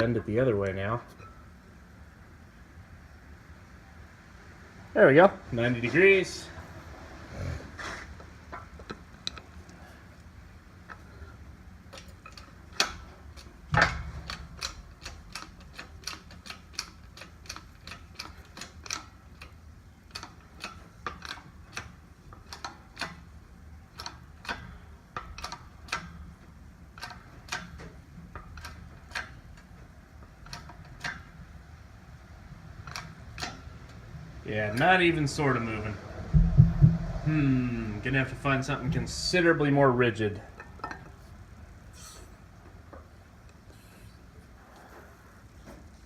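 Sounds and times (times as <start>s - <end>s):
hand tools clicking on metal: 11.9s - 23.3s, 23.9s - 26.3s, 26.9s - 31.3s
loud knocks: 36.3s - 37.3s.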